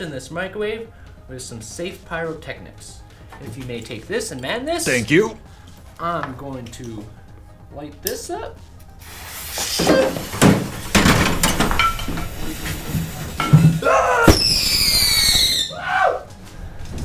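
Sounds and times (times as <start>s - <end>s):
whistling firework shrieking: 9.0s - 10.4s, 13.7s - 16.3s
fireworks banging and crackling: 9.6s - 15.7s.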